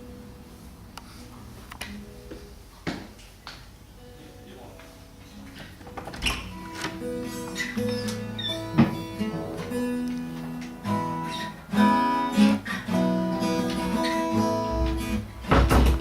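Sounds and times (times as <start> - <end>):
acoustic guitar strumming chords: 3.8 - 16.0.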